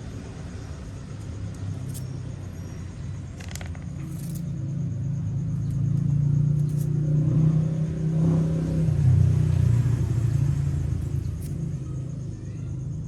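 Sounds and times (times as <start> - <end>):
low engine rumble: 0.0 - 13.0.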